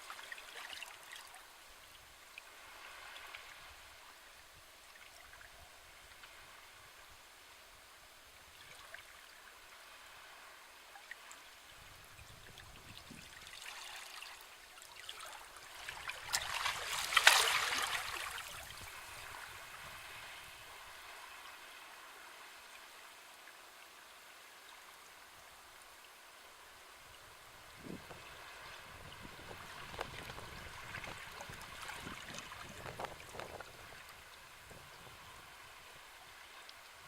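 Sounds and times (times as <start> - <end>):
sea waves washing on shore: 12.6 - 22.6, 26.9 - 37.0.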